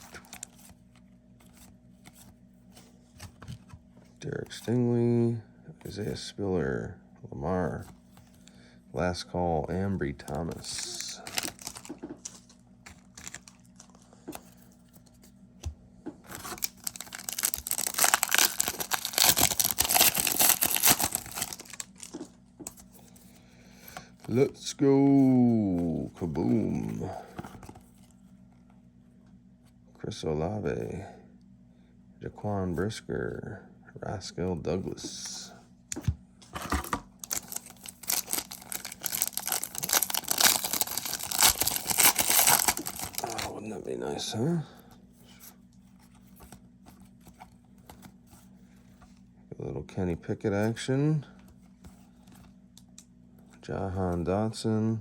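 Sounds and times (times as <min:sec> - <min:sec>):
plastic wrapper tearing and crinkling: 0:10.8 - 0:12.4, 0:13.0 - 0:13.9, 0:16.3 - 0:22.2, 0:37.2 - 0:43.5.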